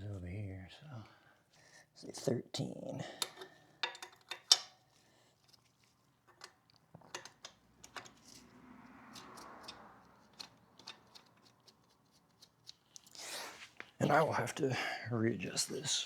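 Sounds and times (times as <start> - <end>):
hands rubbing drive chain: 4.0 - 14.0.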